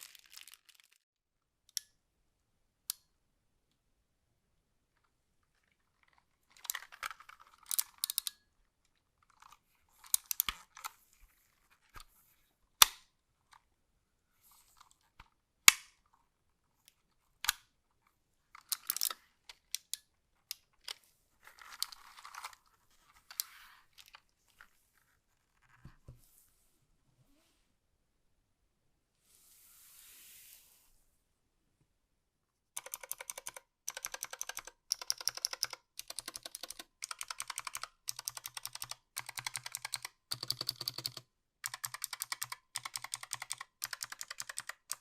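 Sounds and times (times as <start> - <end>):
plastic wrap crinkling: 0.0 - 1.0.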